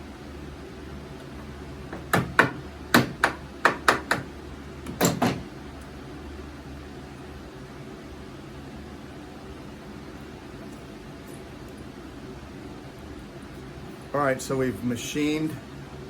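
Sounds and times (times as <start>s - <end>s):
sharp knocks: 1.9s - 4.3s, 4.9s - 5.5s.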